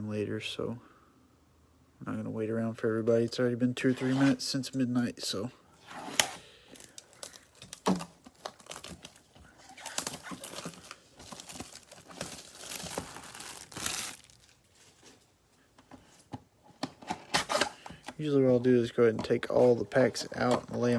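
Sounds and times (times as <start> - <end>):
cellophane crinkling and tearing: 5.9 - 15.0.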